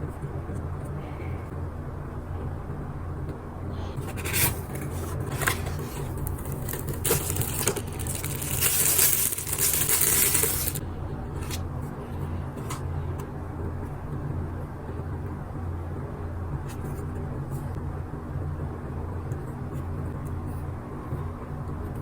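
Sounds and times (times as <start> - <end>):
steady low hum: 0.0 - 22.0
packaging rustling and scraping: 4.0 - 10.8.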